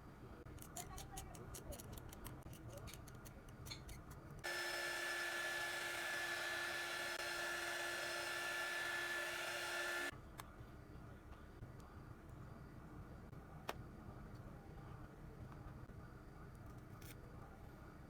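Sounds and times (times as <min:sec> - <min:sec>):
small electric tool motor whining: 0:04.4 - 0:10.1.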